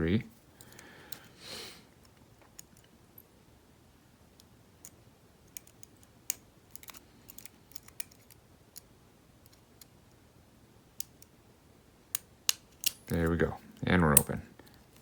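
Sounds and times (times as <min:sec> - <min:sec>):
metallic lock picking clicks: 0:04.8 - 0:08.9, 0:12.1 - 0:13.1.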